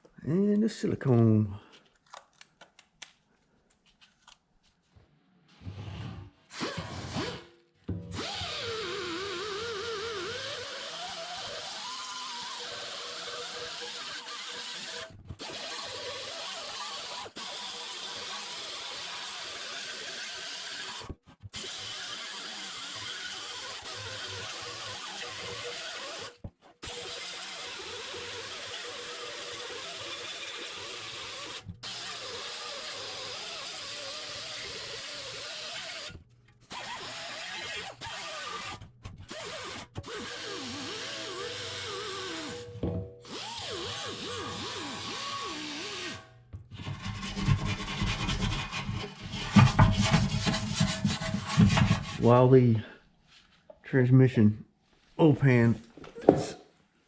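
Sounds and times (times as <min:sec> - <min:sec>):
power tool running: 0:06.5 - 0:21.0, 0:21.6 - 0:46.3.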